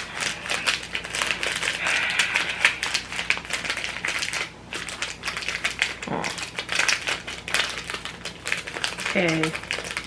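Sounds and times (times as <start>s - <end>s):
sachet crinkling and clicking: 0.0s - 10.0s.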